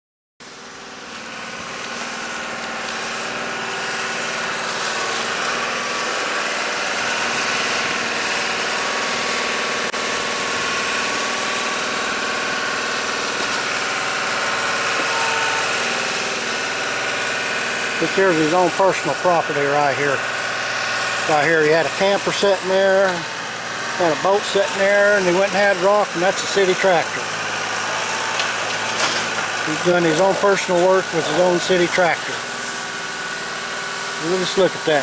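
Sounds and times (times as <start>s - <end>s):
engine running steadily: 0.4s - 35.0s.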